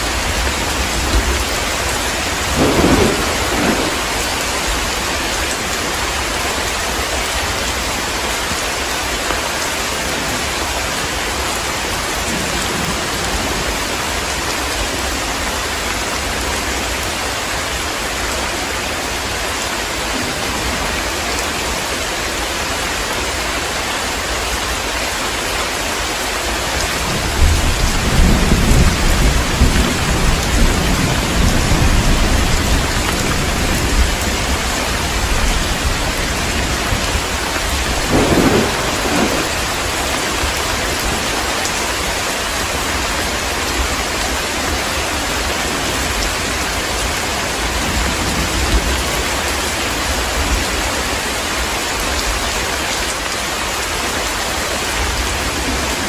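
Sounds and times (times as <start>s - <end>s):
rolling thunder rumble: 0.0s - 6.4s, 26.8s - 42.8s
heavy steady rain: 0.0s - 56.0s.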